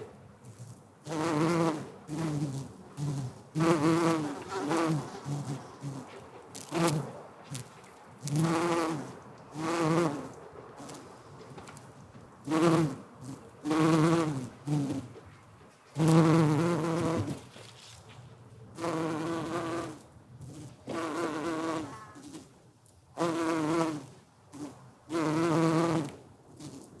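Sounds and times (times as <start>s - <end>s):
bee buzzing: 1.1s - 11.0s, 12.4s - 15.1s, 16.0s - 17.4s, 18.8s - 22.5s.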